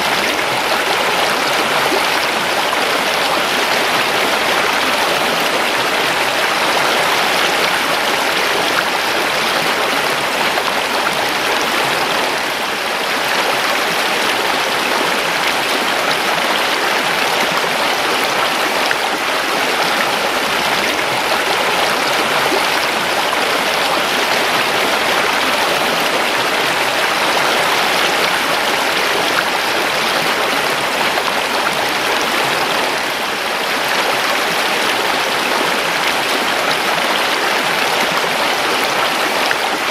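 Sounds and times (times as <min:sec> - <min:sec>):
creek water babbling: 0:00.0 - 0:39.9.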